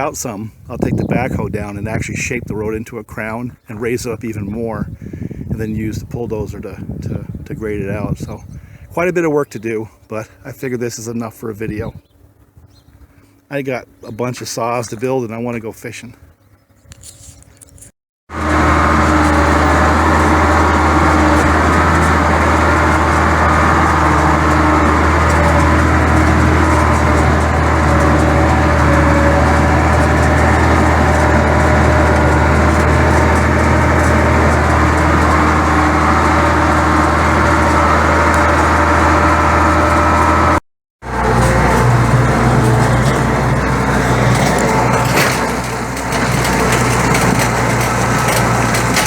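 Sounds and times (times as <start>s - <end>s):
heavy machine engine humming: 18.3s - 49.0s.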